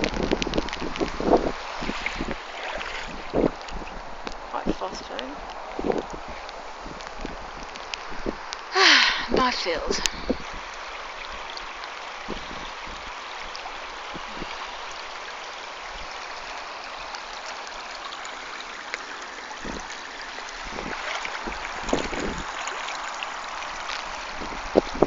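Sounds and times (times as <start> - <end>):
rushing floodwater: 0.0 - 25.0.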